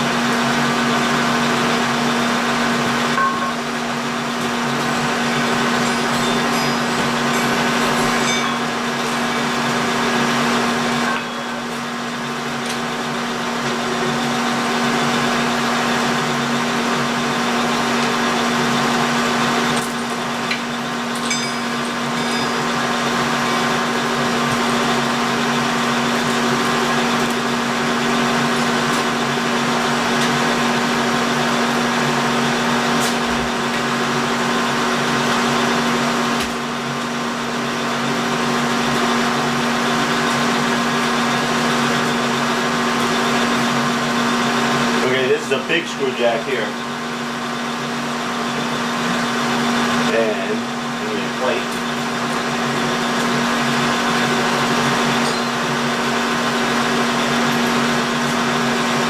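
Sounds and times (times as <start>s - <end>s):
machine tool cutting metal: 4.4s - 11.9s, 19.7s - 27.4s.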